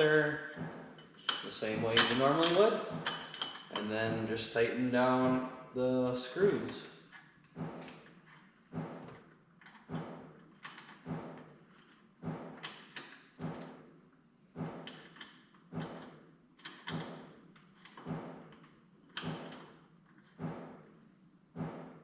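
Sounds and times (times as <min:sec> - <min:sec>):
allen wrench clicking on metal: 0:01.1 - 0:03.9.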